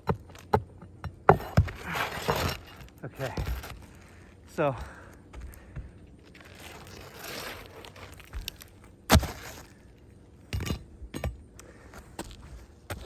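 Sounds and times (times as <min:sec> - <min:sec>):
shingle scraping: 0:00.0 - 0:04.3, 0:05.5 - 0:09.9.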